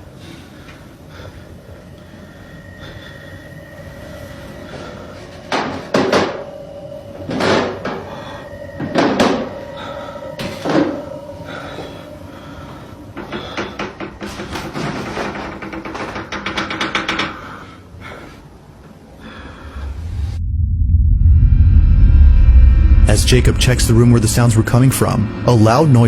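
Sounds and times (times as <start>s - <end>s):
faint steady tone: 0.0s - 14.2s
loud bangs inside a house: 2.8s - 17.3s.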